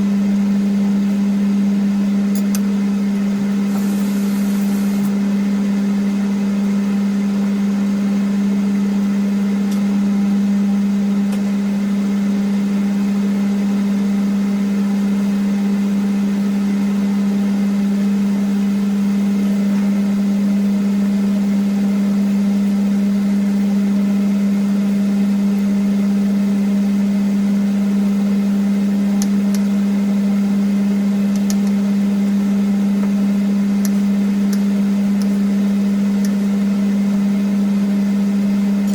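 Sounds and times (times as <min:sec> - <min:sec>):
ventilation fans humming: 0:00.0 - 0:06.0, 0:27.8 - 0:38.9.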